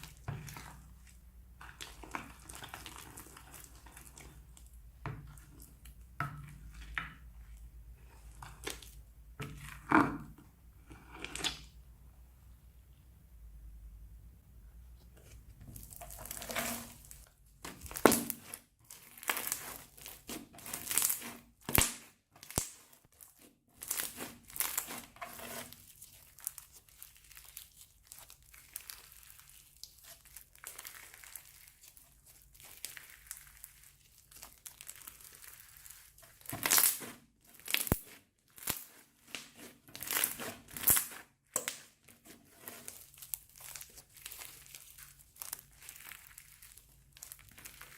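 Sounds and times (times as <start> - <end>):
plastic piping bags crinkling: 15.7 - 47.9.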